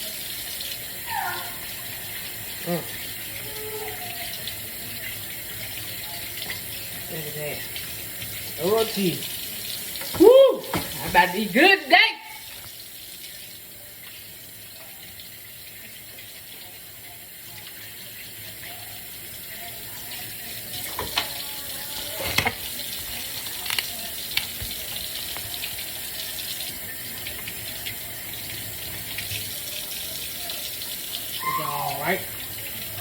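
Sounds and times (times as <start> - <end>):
tap running into sink: 9.9 - 11.3, 20.8 - 21.4, 22.0 - 26.0.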